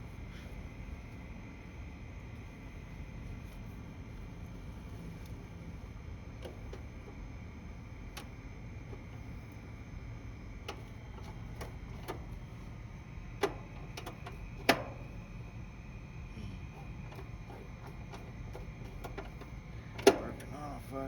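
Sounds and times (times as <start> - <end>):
steady low hum: 0.0 - 21.0
sharp clicks and knocks: 10.7 - 12.4, 13.4 - 15.1, 17.0 - 20.5.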